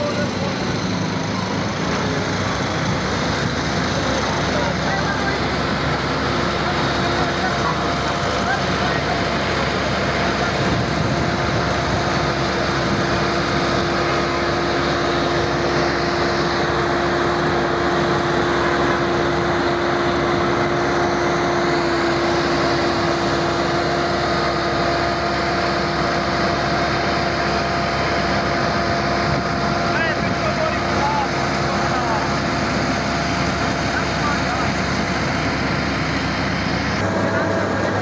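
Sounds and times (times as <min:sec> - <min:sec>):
diesel engine droning: 0:00.0 - 0:38.0.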